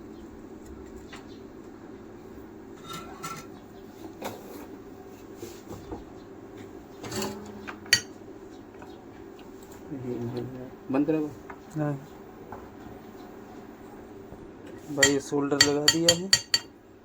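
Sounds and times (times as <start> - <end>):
hand tools clicking and tapping: 15.0 - 16.7.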